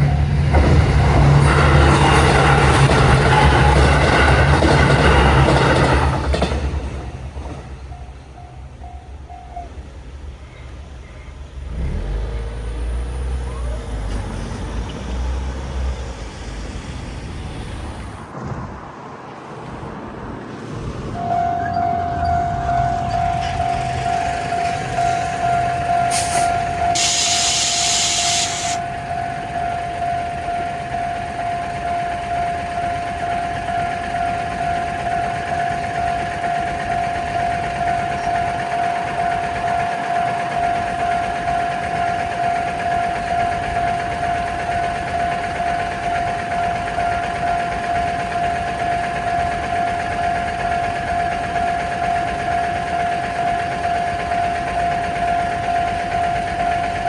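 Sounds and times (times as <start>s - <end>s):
railroad crossing bell ringing: 0.0s - 10.1s, 21.2s - 57.0s
passing train: 0.0s - 57.0s.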